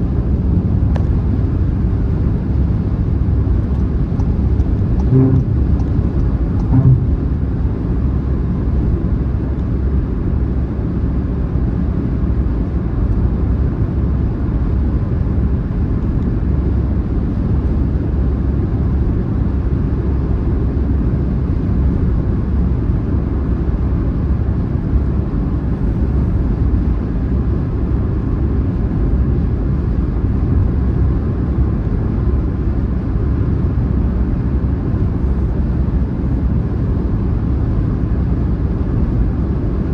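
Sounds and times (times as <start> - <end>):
road and tyre noise: 0.0 - 8.0
brief low thump: 5.0 - 7.3.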